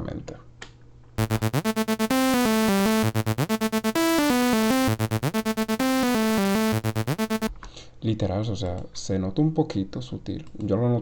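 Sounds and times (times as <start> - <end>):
buzzy synthesizer lead: 1.2 - 7.5
fast repeated synth stabs: 1.2 - 7.5.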